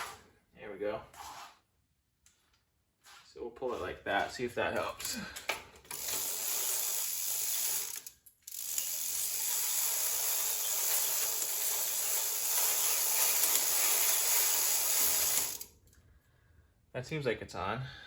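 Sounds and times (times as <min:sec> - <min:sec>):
bicycle chain whirring: 0:05.9 - 0:15.7.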